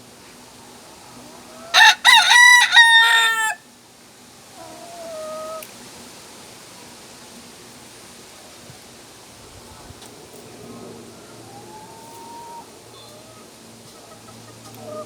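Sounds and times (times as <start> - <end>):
rooster crowing: 1.6 - 3.7.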